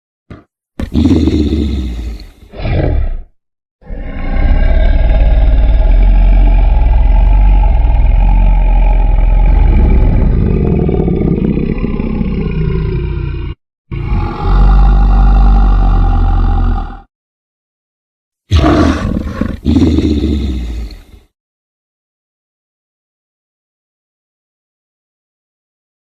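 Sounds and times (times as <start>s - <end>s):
low creature roar: 0.3s - 17.1s, 18.5s - 21.2s.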